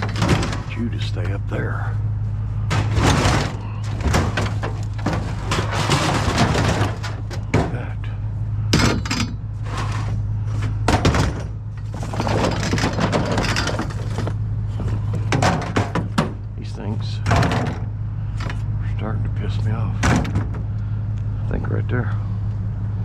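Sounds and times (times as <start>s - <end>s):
scrap metal knocks and clatter: 0.0s - 1.3s, 2.4s - 16.4s, 17.2s - 18.6s
vehicle engine idling: 0.0s - 23.0s.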